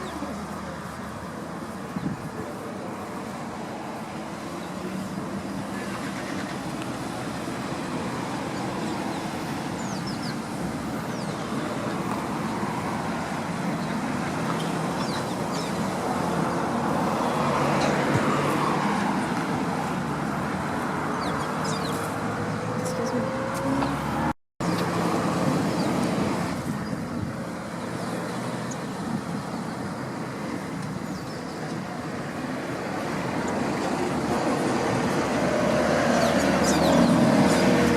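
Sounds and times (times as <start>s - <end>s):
traffic noise: 0.0s - 37.9s
vehicle passing: 15.9s - 26.7s, 32.3s - 37.9s.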